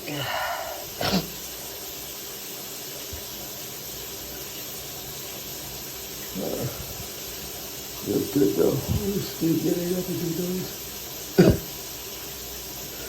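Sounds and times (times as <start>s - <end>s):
person breathing out heavily: 0.0s - 0.9s
steady hiss: 0.0s - 13.0s.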